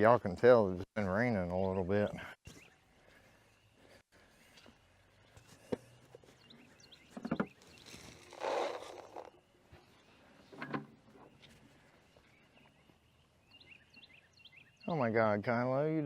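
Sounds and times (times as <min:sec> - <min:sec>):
spring peepers calling: 0:12.2 - 0:15.1.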